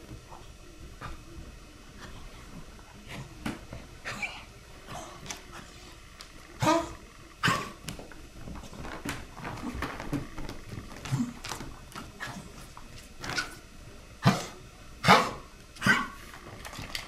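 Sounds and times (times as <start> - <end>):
dog coughing: 6.6 - 7.8, 14.2 - 16.2.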